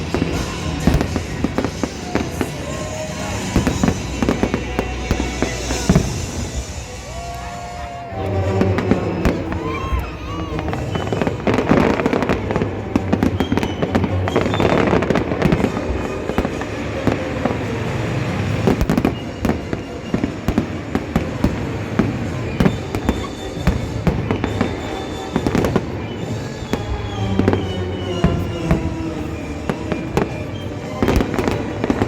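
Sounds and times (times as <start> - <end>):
fireworks bursting and crackling: 0.0 - 32.0
music playing: 0.0 - 32.0.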